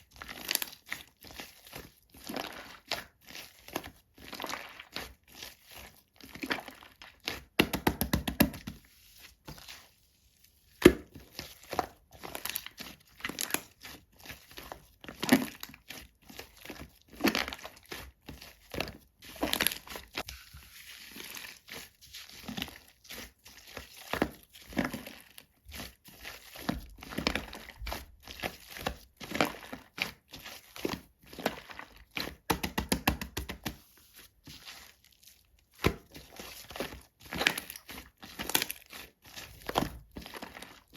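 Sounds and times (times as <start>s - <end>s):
slime squished by hand: 10.5s - 40.9s.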